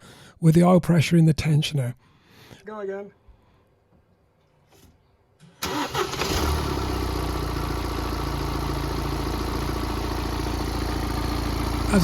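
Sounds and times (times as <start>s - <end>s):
diesel engine idling: 5.6s - 12.0s.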